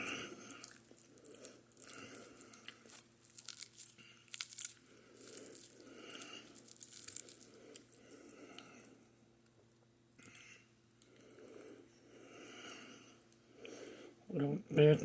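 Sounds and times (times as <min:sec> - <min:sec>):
crisp crunches of chewing toast: 0:00.1 - 0:08.7
wet mouth sounds: 0:00.5 - 0:05.8.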